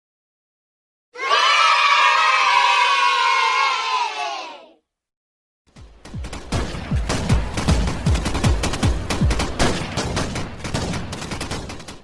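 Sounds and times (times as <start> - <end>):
rapid gunfire: 5.7 - 12.0.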